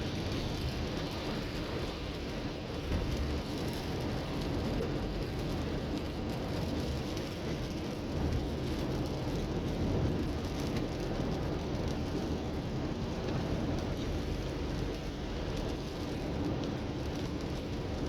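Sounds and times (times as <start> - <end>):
rain on a car: 0.0 - 18.0.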